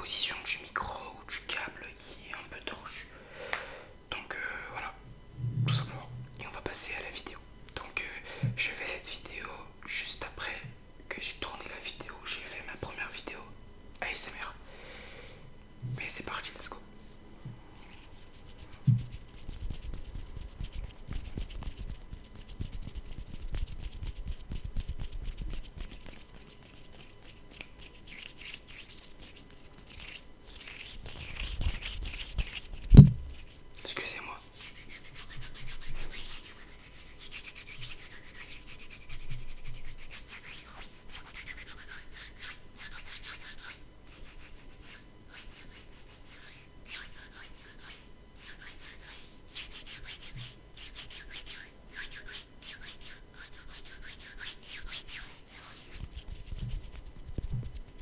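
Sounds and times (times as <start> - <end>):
hands rubbing together: 15.9 - 33.6, 34.4 - 58.0
heavy thump: 32.9 - 33.4.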